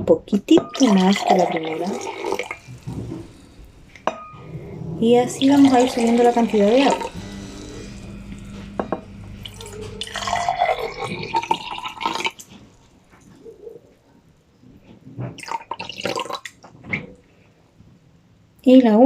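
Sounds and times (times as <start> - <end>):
water poured into glasses: 0.6 - 4.6, 5.2 - 13.0, 15.4 - 16.6.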